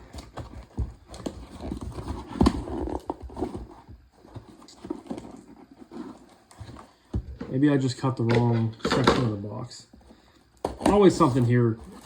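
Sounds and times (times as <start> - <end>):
cardboard box scraping and rustling: 0.0 - 7.1, 10.7 - 12.0.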